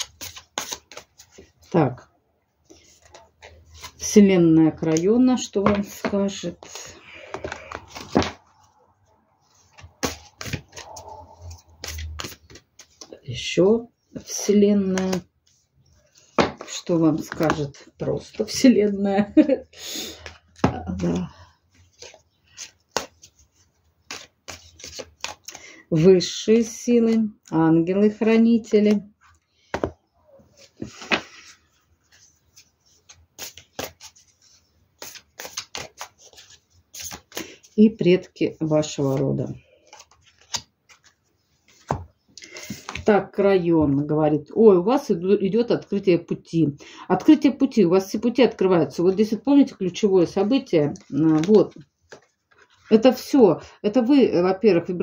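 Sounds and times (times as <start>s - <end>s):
cards being shuffled: 0.0s - 1.6s, 4.8s - 8.7s, 9.6s - 13.2s, 20.1s - 25.6s, 30.6s - 37.7s, 38.7s - 43.1s, 50.9s - 52.9s.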